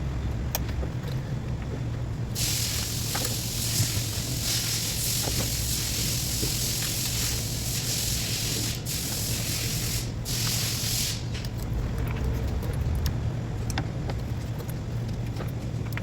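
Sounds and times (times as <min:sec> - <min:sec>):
spraying hiss: 0:02.4 - 0:11.4.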